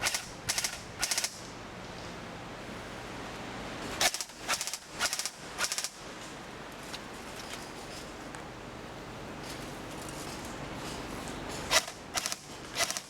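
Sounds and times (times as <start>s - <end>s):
airsoft gun firing bursts: 0.0s - 1.4s, 4.0s - 6.0s, 11.7s - 13.0s.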